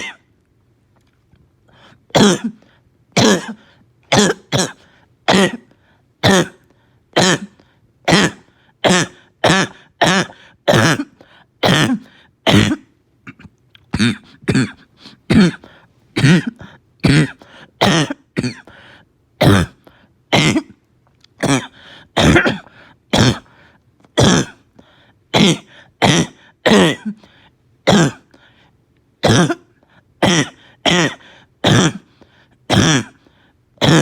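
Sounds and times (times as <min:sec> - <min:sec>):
person barking cough: 0:00.0 - 0:00.3, 0:02.1 - 0:02.6, 0:03.2 - 0:06.6, 0:07.2 - 0:18.7, 0:19.4 - 0:20.8, 0:21.4 - 0:23.5, 0:24.2 - 0:24.6, 0:25.3 - 0:28.3, 0:29.2 - 0:32.1, 0:32.7 - 0:33.2, 0:33.8 - 0:34.0.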